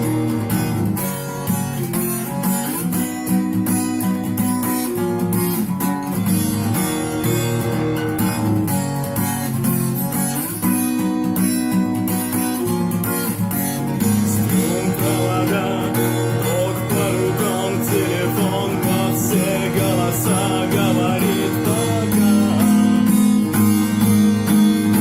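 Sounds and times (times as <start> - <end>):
acoustic guitar strumming: 0.0 - 25.0
wavering melody line: 14.0 - 25.0.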